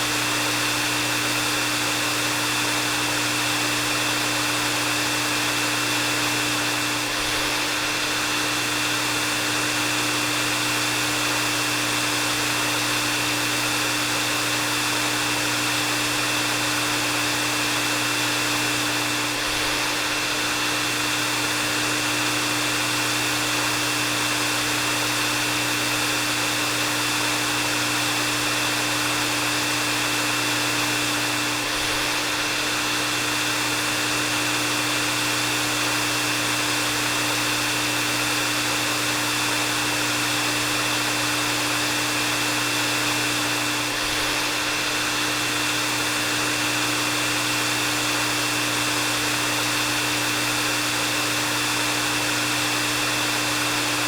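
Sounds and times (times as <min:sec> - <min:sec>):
hair dryer running: 0:00.0 - 0:54.0.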